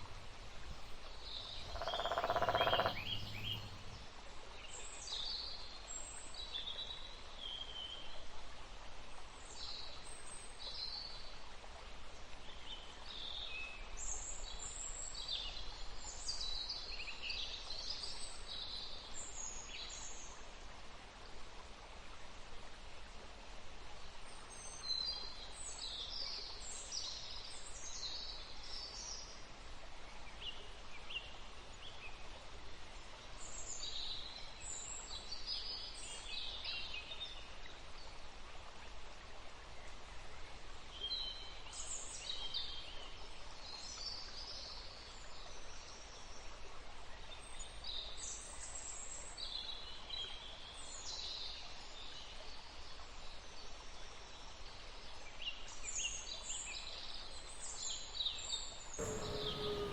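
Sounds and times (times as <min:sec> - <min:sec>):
small birds chirping: 0:00.0 - 0:04.0, 0:59.0 - 0:59.9
steady background hiss: 0:00.0 - 0:04.1, 0:59.0 - 0:59.9.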